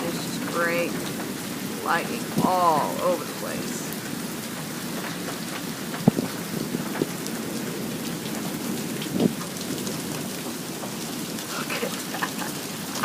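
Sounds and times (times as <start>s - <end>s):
steady pouring rain: 0.0s - 13.0s.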